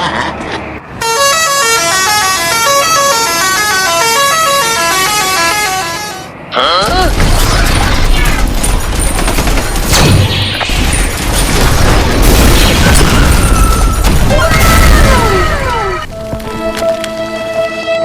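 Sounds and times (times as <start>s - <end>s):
crashing and booming effects: 6.9s - 16.1s
music: 16.1s - 18.0s.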